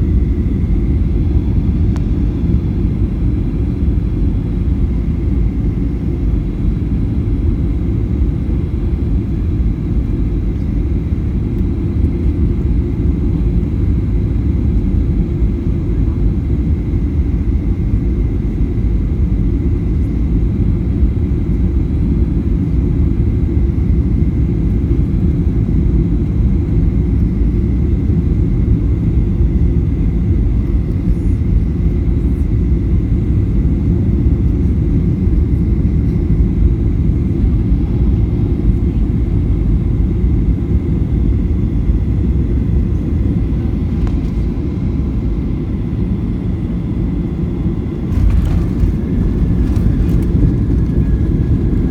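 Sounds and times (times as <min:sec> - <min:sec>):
airliner cabin engine rumble: 0:00.0 - 0:51.9.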